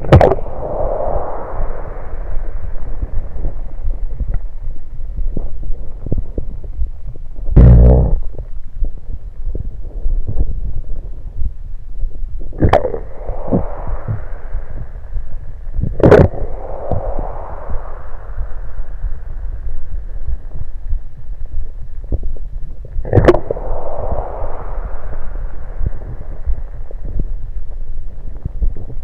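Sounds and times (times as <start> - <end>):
fizzy stomach gurgling: 0.0 - 0.4, 12.6 - 13.0, 23.1 - 23.5
steady low rumble: 0.0 - 29.0.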